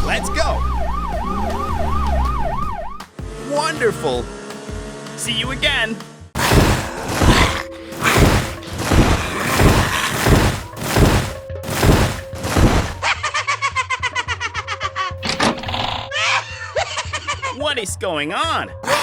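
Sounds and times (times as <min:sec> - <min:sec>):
music: 0:02.6 - 0:06.3
heavy thuds: 0:06.4 - 0:13.0
rapid fluttering sound: 0:06.4 - 0:13.0.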